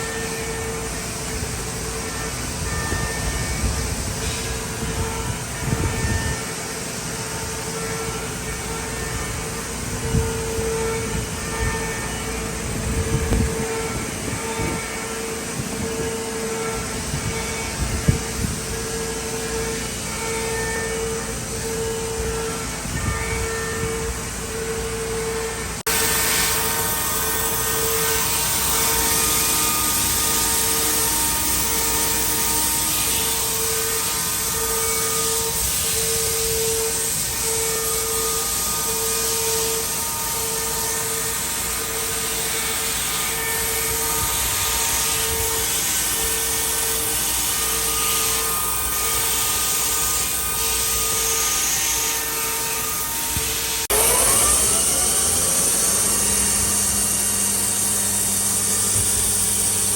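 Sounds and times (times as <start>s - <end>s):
machining center humming: 0.0s - 59.9s
rising machine whine: 0.0s - 59.9s
pulsing tone: 53.9s - 59.1s.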